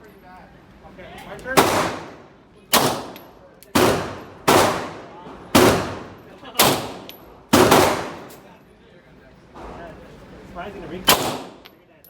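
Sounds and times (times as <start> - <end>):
gunshots with echo: 1.6 - 3.2, 3.8 - 8.3, 11.1 - 11.6.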